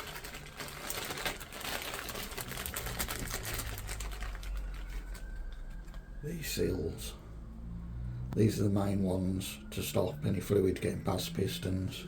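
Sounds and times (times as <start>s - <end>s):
plastic packets crinkling: 0.0s - 6.1s.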